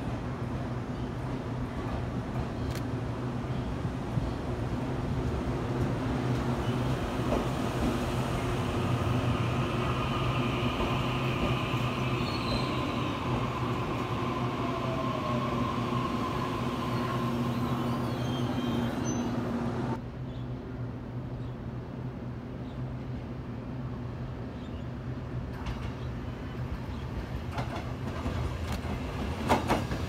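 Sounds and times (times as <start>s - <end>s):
electric train humming: 5.0s - 20.0s.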